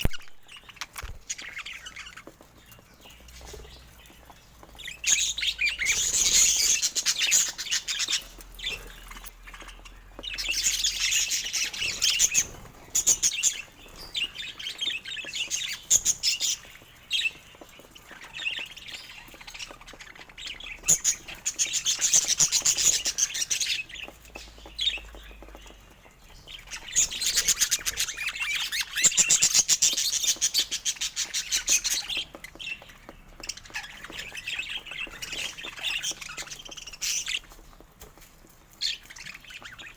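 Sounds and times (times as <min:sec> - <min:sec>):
budgerigars chattering and chirping: 0:00.1 - 0:37.7.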